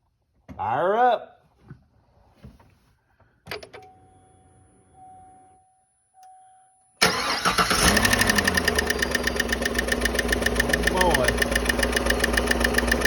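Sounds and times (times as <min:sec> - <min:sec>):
faint steady tone: 0:03.8 - 0:07.0
truck engine starting and running: 0:07.0 - 0:13.0.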